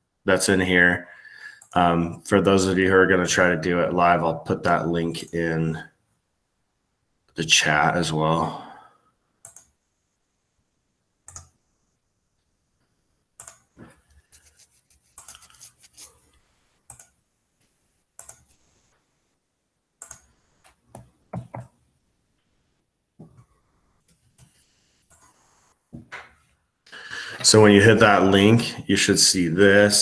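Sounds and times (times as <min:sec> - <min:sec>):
mouse and keyboard clicks: 0:18.2 - 0:18.5, 0:20.0 - 0:20.3.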